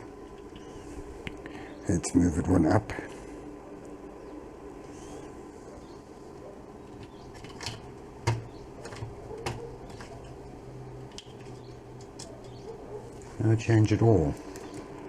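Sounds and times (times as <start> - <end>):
steady low hum: 0.0 - 15.0
clicks and knocks of handling: 6.9 - 10.4, 11.1 - 13.3.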